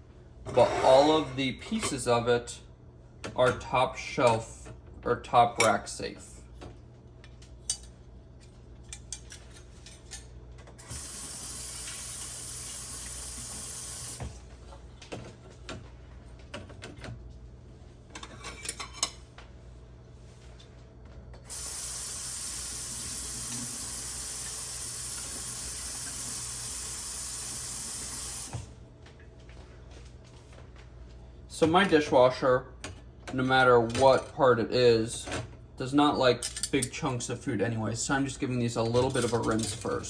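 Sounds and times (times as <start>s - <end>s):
tap running water: 10.8s - 14.4s, 21.5s - 28.7s.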